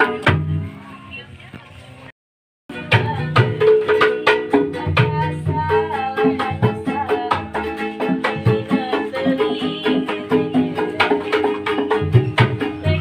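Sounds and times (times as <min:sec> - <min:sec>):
hand drum beat: 0:00.0 - 0:00.6, 0:02.7 - 0:13.0.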